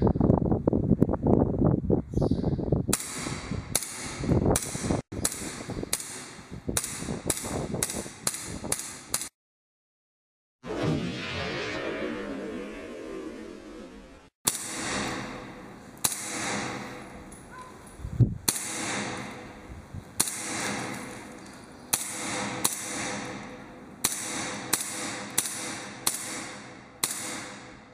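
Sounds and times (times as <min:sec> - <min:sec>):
airsoft gun shots: 0:02.9 - 0:09.3, 0:14.5 - 0:17.4, 0:18.4 - 0:27.9.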